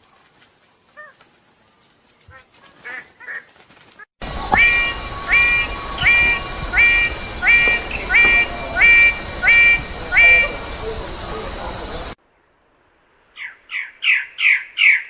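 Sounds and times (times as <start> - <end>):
bird calling flat note: 4.2 - 11.0
high-pitched hum: 4.2 - 12.2.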